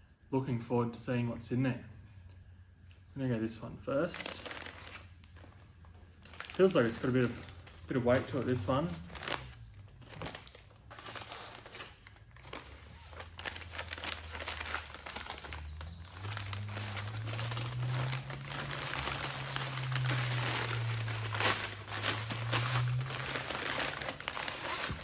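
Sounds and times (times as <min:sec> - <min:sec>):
packaging crinkling and rustling: 0:03.9 - 0:25.0
low steady hum: 0:12.0 - 0:25.0.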